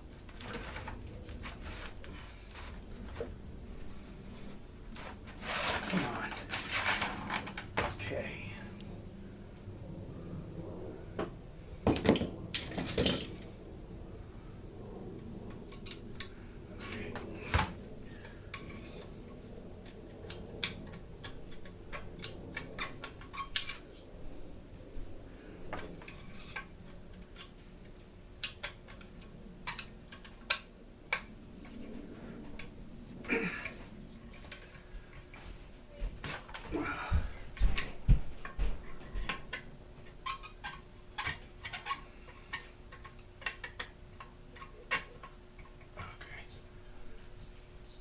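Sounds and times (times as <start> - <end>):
metal parts clinking and knocking: 11.9 - 13.4.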